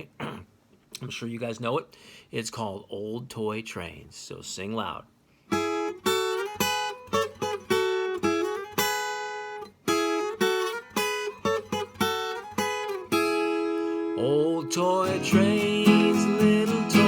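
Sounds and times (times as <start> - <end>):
acoustic guitar strumming: 5.5 - 17.0.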